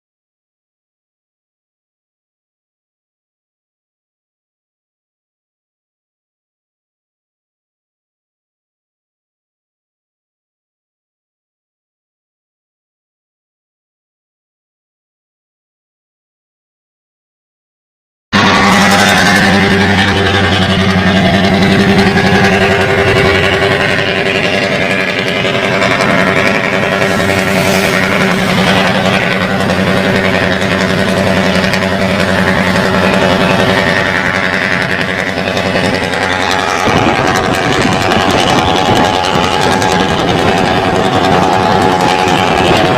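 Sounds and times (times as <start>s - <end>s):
diesel truck engine drone: 18.4s - 42.9s.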